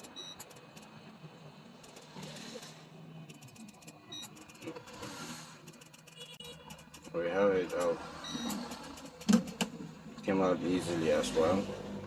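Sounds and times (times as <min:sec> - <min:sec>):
short beeps: 0:00.1 - 0:00.4, 0:08.2 - 0:08.7.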